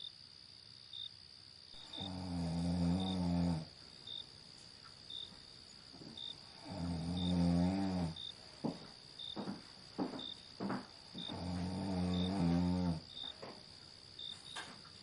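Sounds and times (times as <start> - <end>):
cricket chirping: 0.0 - 15.0
high insect buzz: 0.0 - 15.0
person snoring: 1.8 - 3.7, 6.5 - 8.2, 11.2 - 13.1.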